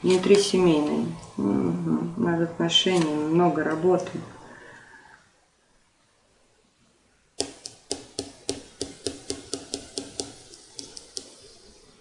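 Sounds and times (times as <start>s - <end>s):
sharp taps: 7.4s - 11.4s.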